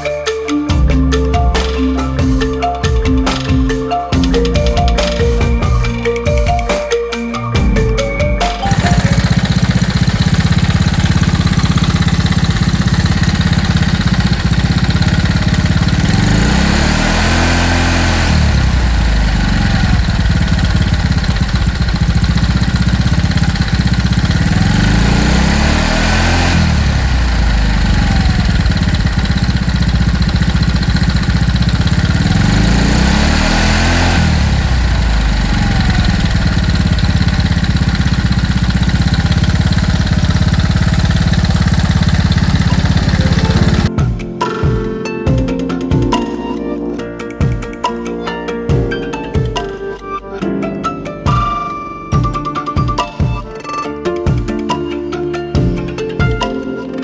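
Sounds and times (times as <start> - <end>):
scooter engine idling and revving: 0.0 - 44.2.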